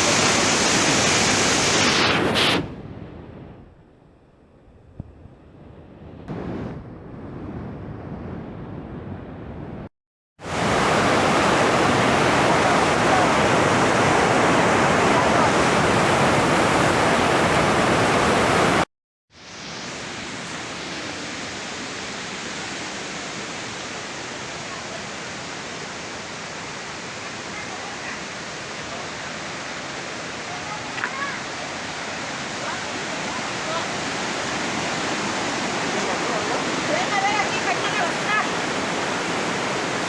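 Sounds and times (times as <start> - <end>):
waterfall rushing: 0.0 - 1.8, 10.4 - 18.8, 19.7 - 40.0.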